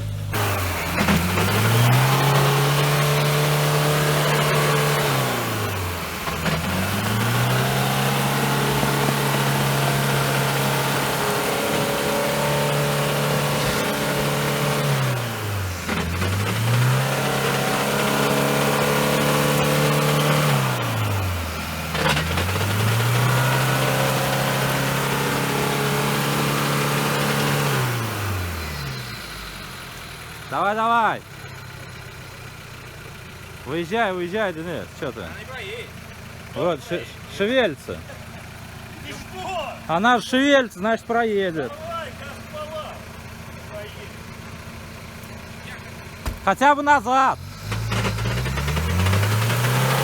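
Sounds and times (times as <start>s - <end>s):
vehicle engine revving hard: 0.0s - 30.7s, 44.3s - 50.0s.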